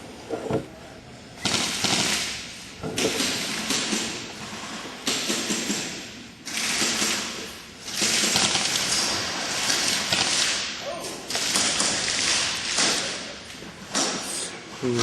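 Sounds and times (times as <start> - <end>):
airsoft guns rapid firing: 1.4 - 2.3, 3.1 - 4.2, 5.0 - 10.6.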